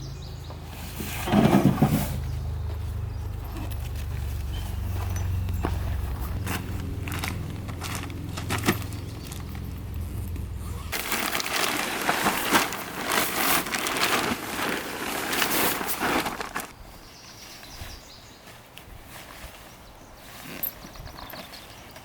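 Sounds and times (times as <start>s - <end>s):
low steady hum: 1.0s - 14.7s
dry wood crunching and snapping: 2.7s - 16.8s.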